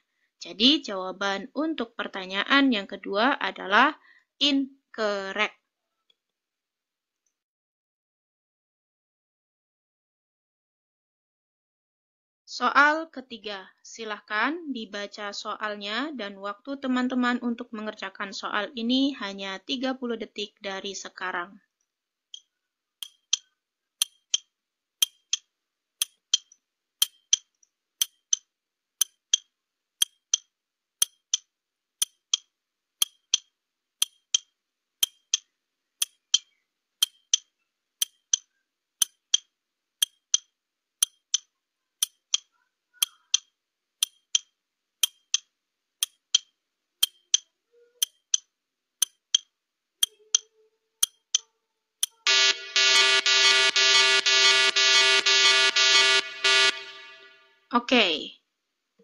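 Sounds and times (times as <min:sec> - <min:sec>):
clock ticking: 0:22.4 - 0:53.3.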